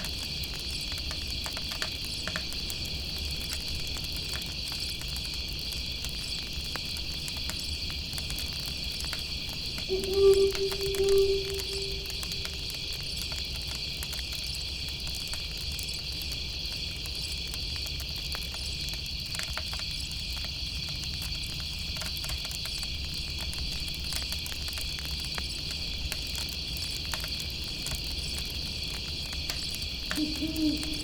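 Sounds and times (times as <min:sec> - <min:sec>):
crickets and insects chirping: 0:09.9 - 0:12.9, 0:30.0 - 0:31.0.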